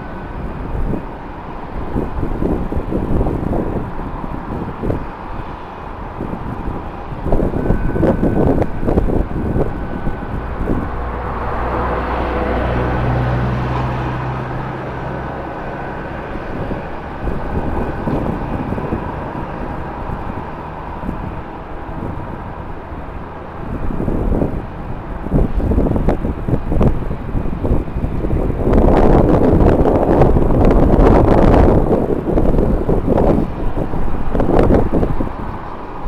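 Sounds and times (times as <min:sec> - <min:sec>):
jet airliner engines: 0:00.0 - 0:36.0
wind buffeting microphone: 0:00.0 - 0:36.0.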